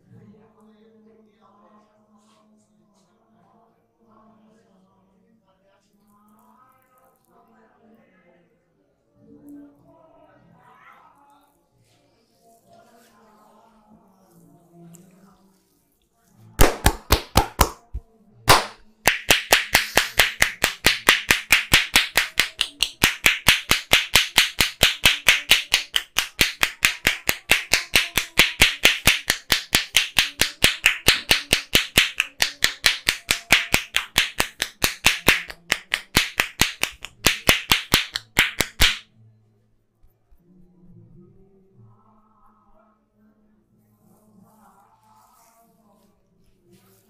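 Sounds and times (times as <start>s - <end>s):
hands slapping skin: 16.6s - 39.0s.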